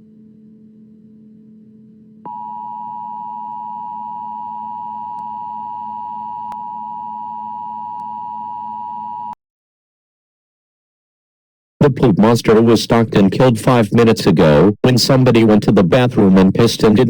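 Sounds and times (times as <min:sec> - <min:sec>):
faint low hum: 0:00.0 - 0:09.3
two-tone electronic alert tone: 0:02.3 - 0:09.4.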